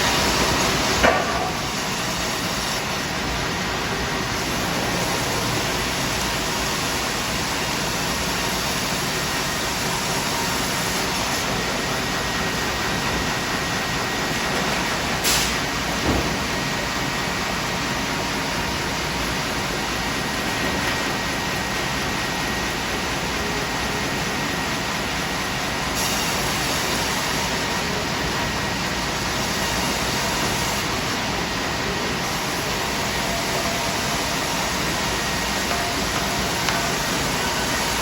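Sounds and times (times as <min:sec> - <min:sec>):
band sawmill running: 0:00.0 - 0:38.0.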